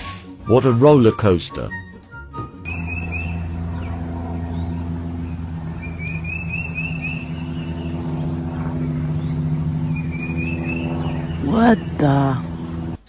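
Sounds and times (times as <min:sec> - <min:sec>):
low motor drone: 0:01.7 - 0:13.0
high warbling chirps: 0:02.7 - 0:13.0.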